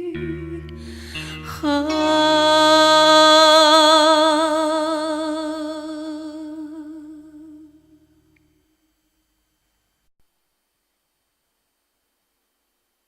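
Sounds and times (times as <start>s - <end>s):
singing note with vibrato: 0.0s - 8.8s.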